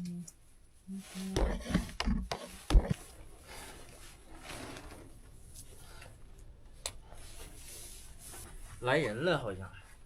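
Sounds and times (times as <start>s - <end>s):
rustling: 0.9s - 6.1s.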